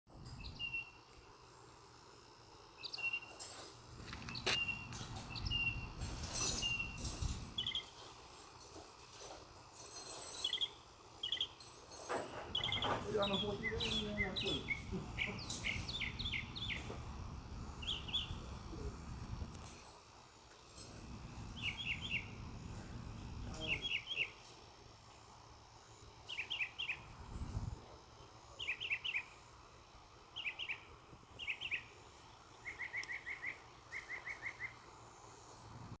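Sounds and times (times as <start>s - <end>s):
bird chirping: 0.2s - 1.0s, 2.8s - 8.1s, 10.3s - 11.6s, 12.3s - 19.0s, 21.2s - 24.5s, 26.2s - 27.7s, 28.5s - 29.5s, 30.4s - 35.0s
low noise: 12.1s - 31.4s.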